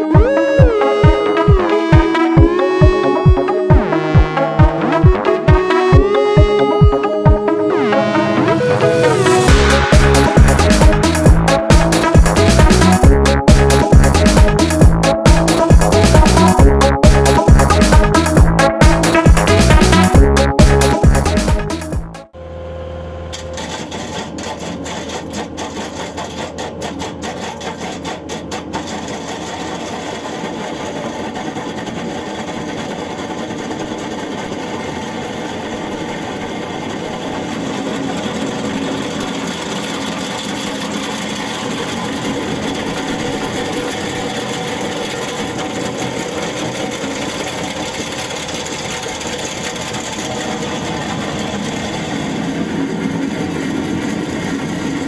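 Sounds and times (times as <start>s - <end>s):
machinery droning: 0.0s - 55.0s
rapid clatter of clicks: 23.4s - 55.0s.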